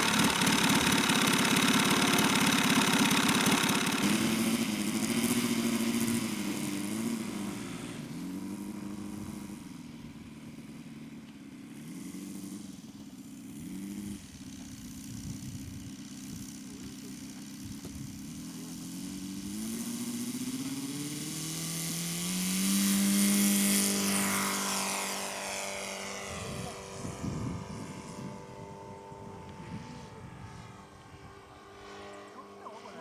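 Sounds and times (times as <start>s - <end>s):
model aircraft engine running: 0.0s - 33.0s.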